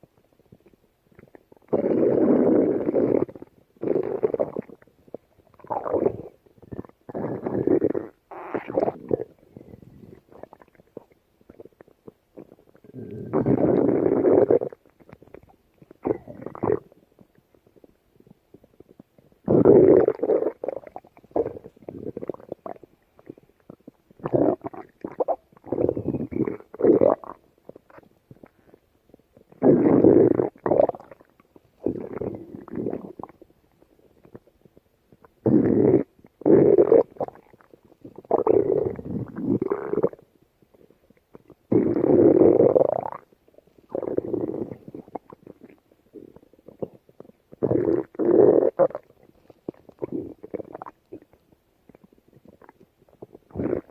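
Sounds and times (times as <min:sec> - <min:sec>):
stomach growling and gurgling: 0:00.0 - 0:53.9
crackly pops: 0:14.6 - 0:29.6.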